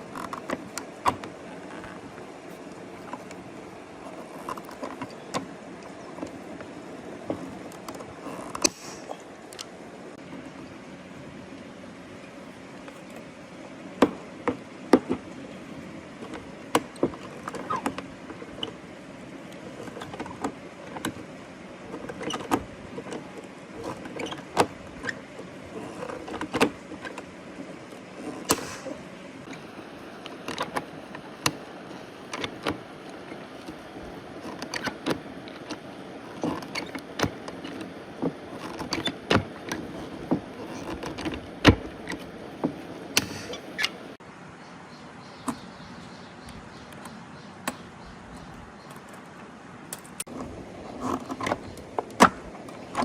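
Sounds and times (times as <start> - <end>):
steady background hiss: 0.0 - 53.0.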